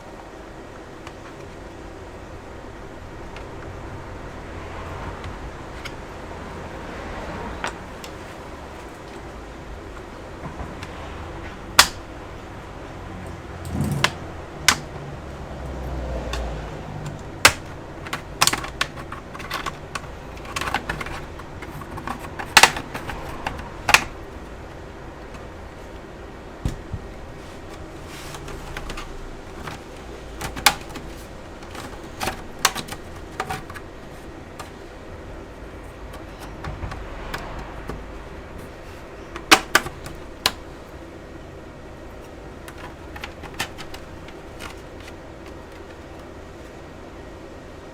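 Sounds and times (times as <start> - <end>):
clicks and snaps of tools on plastic: 11.8 - 12.0, 13.6 - 14.9, 16.2 - 24.2, 28.3 - 33.9, 39.3 - 40.6, 42.7 - 46.3.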